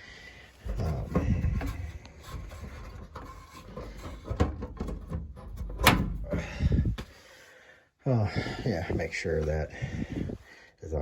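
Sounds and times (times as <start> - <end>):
rubbing and scraping: 0.4 - 7.2, 8.4 - 10.4.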